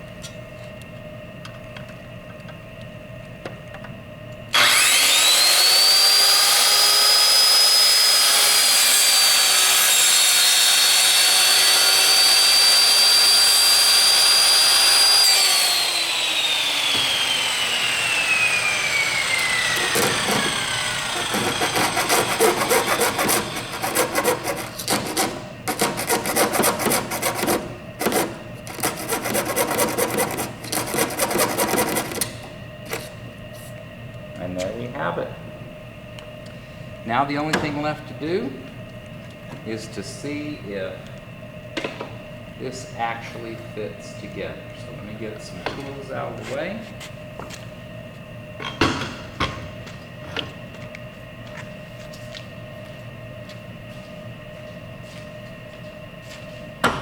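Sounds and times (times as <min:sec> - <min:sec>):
power saw whining: 0:04.5 - 0:32.4.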